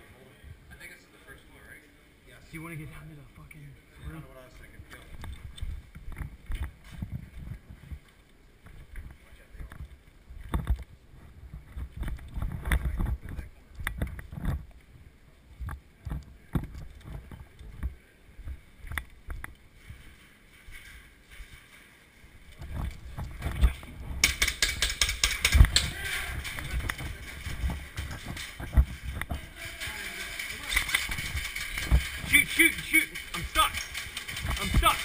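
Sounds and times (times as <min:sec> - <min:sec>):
footsteps: 0:04.0 - 0:14.9, 0:15.5 - 0:35.0
gear rustling and knocks: 0:22.6 - 0:35.0
fast steady rattle: 0:24.2 - 0:35.0.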